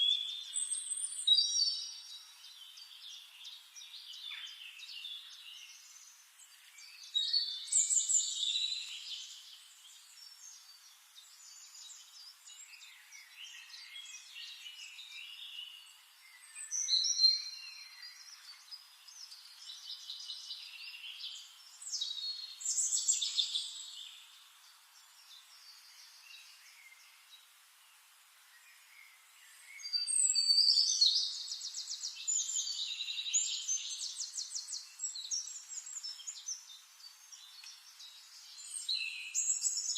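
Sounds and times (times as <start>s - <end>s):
songbirds singing: 0.0s - 39.9s.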